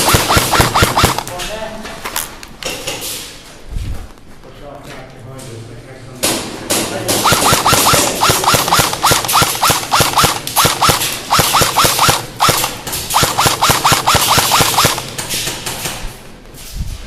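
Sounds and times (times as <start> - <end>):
airsoft rifle firing: 0.0 - 1.4, 7.1 - 15.2.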